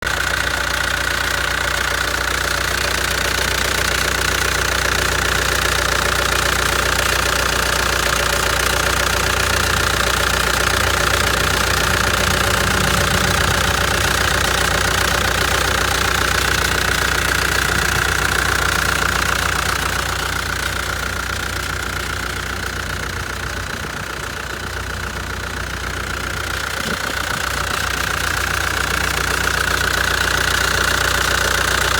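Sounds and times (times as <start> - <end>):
diesel engine running: 0.0 - 31.9
machine whine: 9.4 - 16.6.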